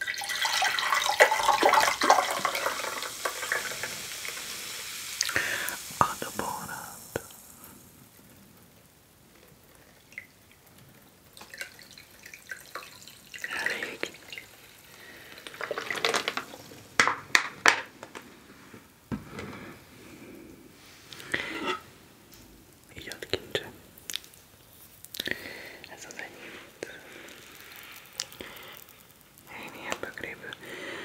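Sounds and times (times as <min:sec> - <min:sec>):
liquid dripping and trickling: 0:00.0 - 0:06.4, 0:09.7 - 0:17.0, 0:22.8 - 0:30.3.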